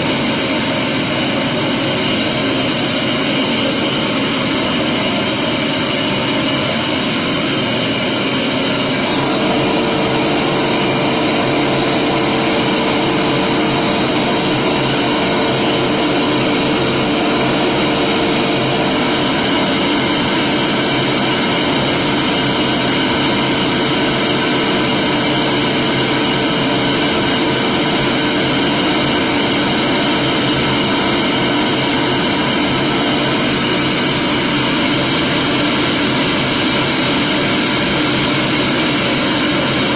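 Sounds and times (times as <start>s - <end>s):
vacuum cleaner running: 0.0s - 39.9s
low hum: 8.2s - 22.6s.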